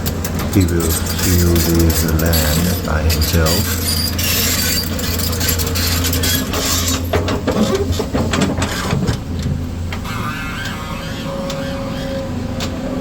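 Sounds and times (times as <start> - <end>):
knocks and clatter: 0.0 - 10.0
excavator diesel engine: 0.0 - 13.0.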